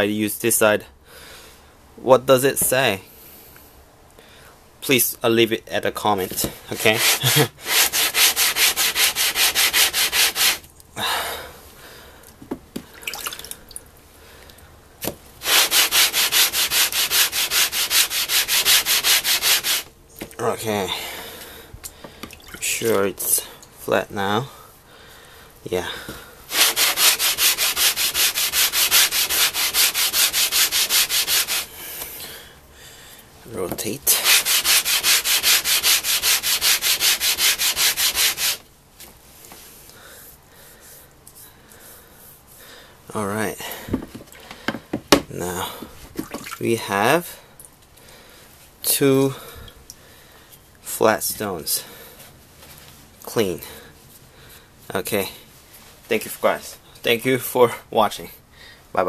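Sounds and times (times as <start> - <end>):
stone scraping on sandpaper: 6.7 - 10.6, 15.4 - 19.9, 26.5 - 31.7, 34.1 - 38.6.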